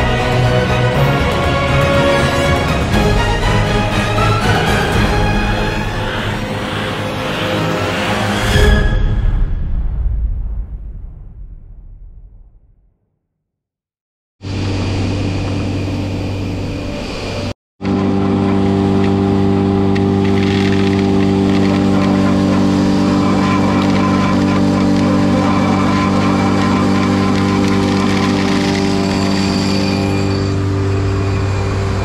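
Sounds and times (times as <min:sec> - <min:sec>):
grain dryer droning hum: 0:14.4 - 0:32.0.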